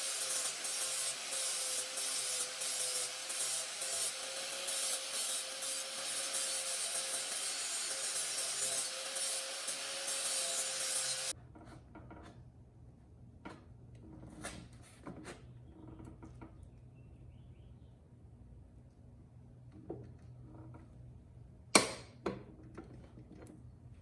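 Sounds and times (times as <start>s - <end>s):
blade sharpening scrape: 0.0s - 11.3s
tools clicking and knocking: 21.8s - 23.6s.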